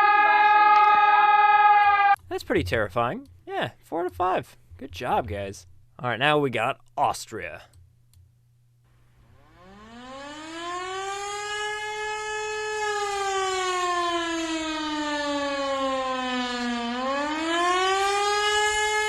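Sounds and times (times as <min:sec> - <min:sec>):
mechanical air-raid siren wailing: 0:00.0 - 0:02.2, 0:09.4 - 0:19.0.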